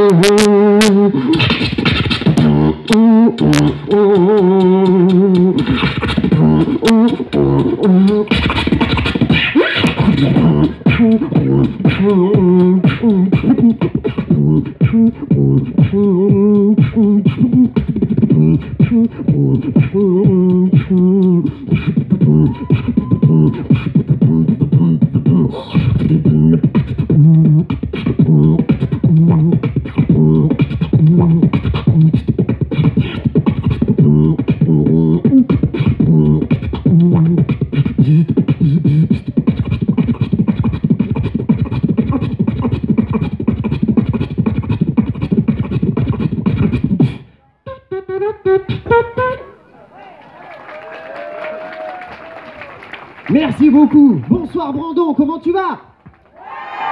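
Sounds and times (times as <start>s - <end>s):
beatboxing: 0.0s - 49.6s, 53.3s - 56.9s
hummed vocal line: 0.0s - 49.6s.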